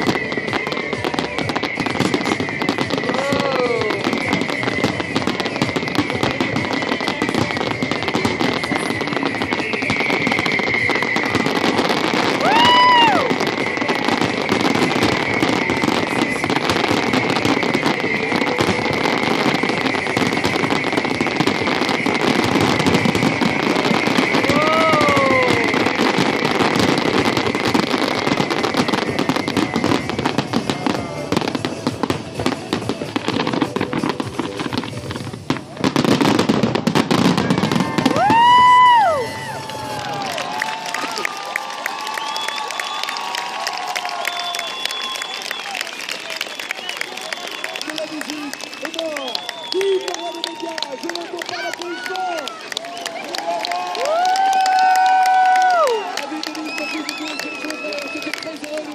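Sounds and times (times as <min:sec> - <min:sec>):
fireworks crackling and popping: 0:00.0 - 0:58.9.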